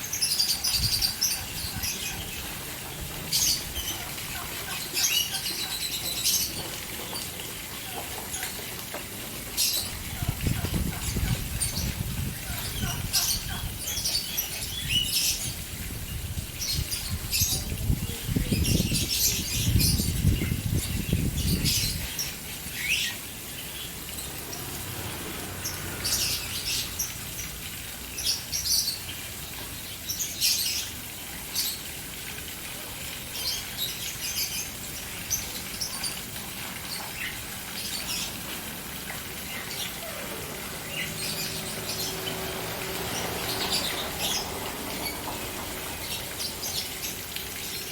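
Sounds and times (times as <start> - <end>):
birds chirping: 0.0 - 31.0, 33.3 - 47.9
fountain splashing: 0.0 - 47.9.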